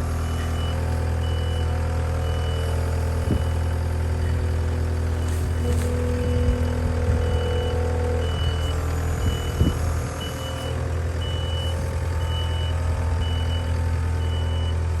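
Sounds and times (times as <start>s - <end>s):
diesel engine running: 0.0s - 15.0s
backup alarm beeping: 5.2s - 14.8s.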